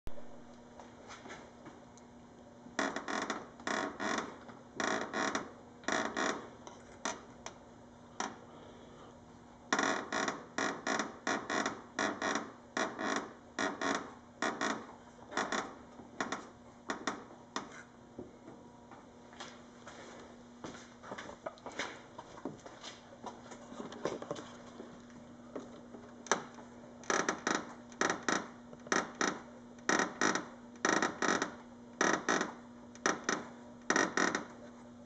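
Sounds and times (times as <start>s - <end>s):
faint steady hum: 0.1s - 35.0s
plastic bumper creaking: 26.2s - 34.6s.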